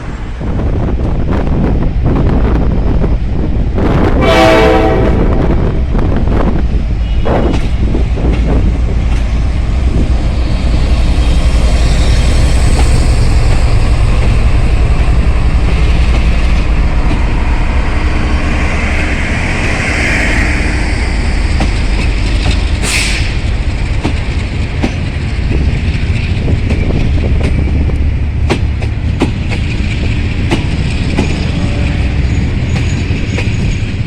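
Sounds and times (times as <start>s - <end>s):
train rumbling past: 0.0s - 34.0s
train horn blast: 4.1s - 5.8s.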